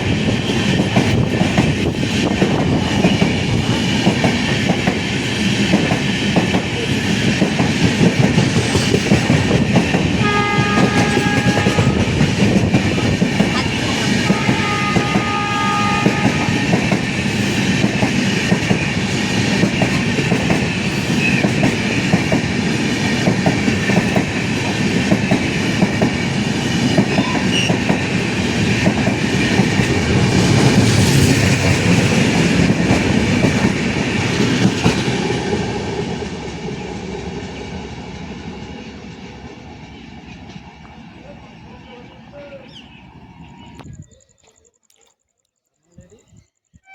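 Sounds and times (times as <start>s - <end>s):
train wheels clattering over rail joints: 0.6s - 15.4s, 16.0s - 35.4s.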